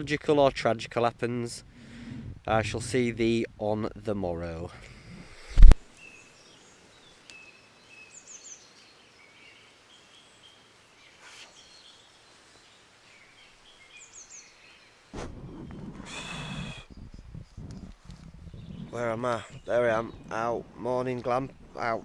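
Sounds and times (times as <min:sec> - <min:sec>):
birds chirping and trilling: 0:06.0 - 0:22.0
rustling and rasping movement: 0:15.2 - 0:22.0.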